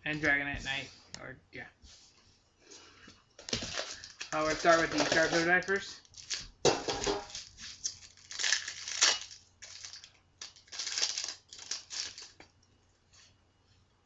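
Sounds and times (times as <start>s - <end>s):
foil pack crinkling and tearing: 3.4s - 12.5s.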